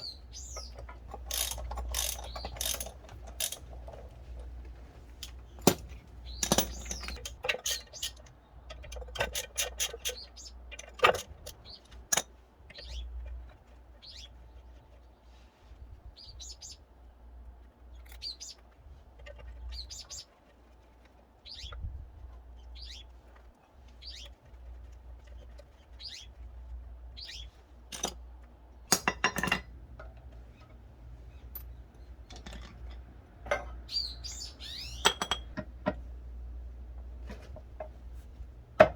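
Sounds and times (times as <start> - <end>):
small bird chirping: 0.0 - 3.6, 6.2 - 8.9, 9.7 - 15.4, 16.0 - 17.1, 17.8 - 27.8, 33.7 - 35.5
sharp clicks and knocks: 0.0 - 13.6, 27.9 - 30.8.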